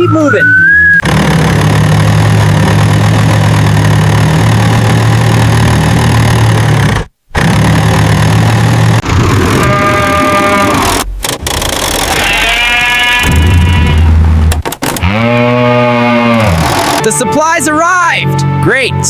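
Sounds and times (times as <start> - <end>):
truck engine running: 0.0 - 10.2, 16.5 - 18.1.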